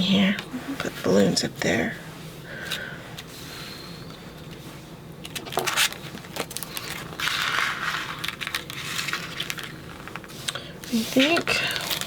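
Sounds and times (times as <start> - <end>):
paper rustling: 5.3 - 12.0.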